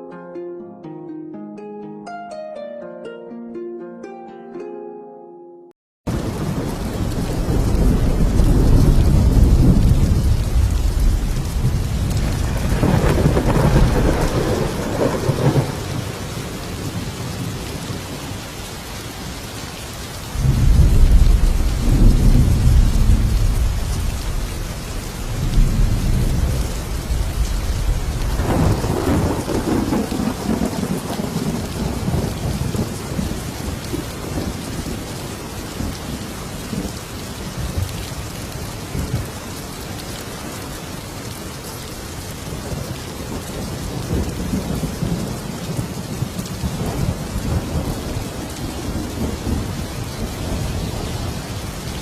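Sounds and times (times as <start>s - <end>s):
thunder rumbling: 6.1s - 18.4s, 20.3s - 39.4s, 42.2s - 52.0s
heavy rain: 6.1s - 52.0s.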